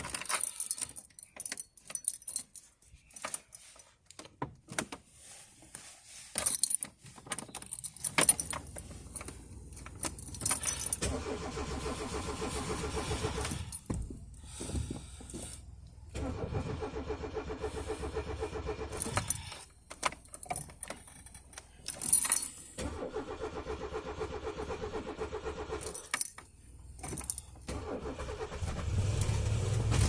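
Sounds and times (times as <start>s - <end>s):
keys jangling: 0.0s - 4.0s, 6.4s - 11.3s, 13.3s - 15.6s, 18.9s - 22.7s, 25.8s - 27.7s
starter cranking engine: 10.6s - 13.8s, 16.1s - 19.6s, 22.8s - 25.9s, 27.6s - 30.0s.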